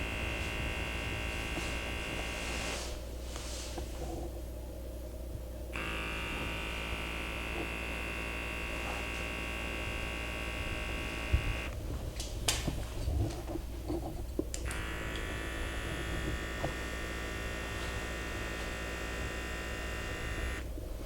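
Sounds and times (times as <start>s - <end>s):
small motor buzzing: 0.0s - 2.9s, 5.7s - 11.8s, 14.6s - 20.7s
constant low hum: 0.0s - 21.0s.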